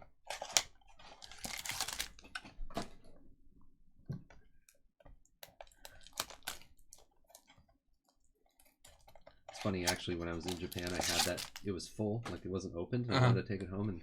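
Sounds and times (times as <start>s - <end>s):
packaging crinkling: 0.3s - 2.3s, 5.6s - 7.5s, 9.5s - 11.7s.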